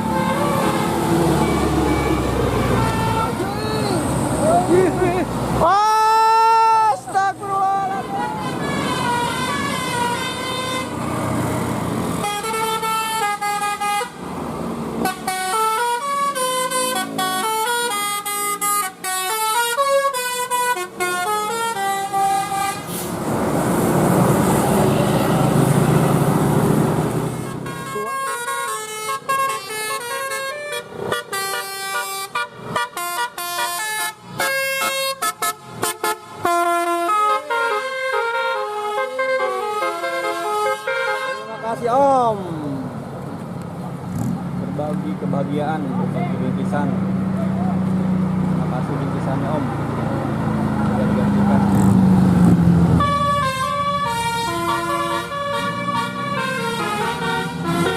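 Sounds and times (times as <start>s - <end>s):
musical air horn melody: 0.0s - 3.4s, 7.8s - 11.0s, 15.0s - 23.1s, 27.4s - 41.8s, 53.0s - 57.9s.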